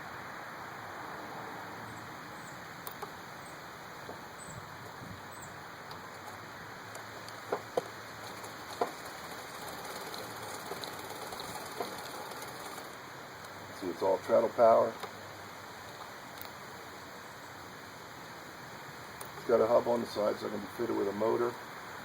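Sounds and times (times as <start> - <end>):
treadle sewing machine running: 8.2 - 13.0.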